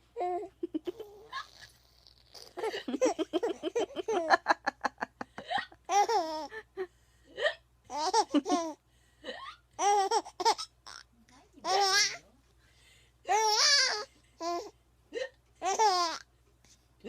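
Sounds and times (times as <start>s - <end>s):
baby laughing: 0.2s - 4.4s, 5.8s - 6.5s, 7.9s - 8.8s, 9.8s - 11.0s, 11.6s - 12.2s, 13.3s - 14.7s, 15.6s - 16.2s.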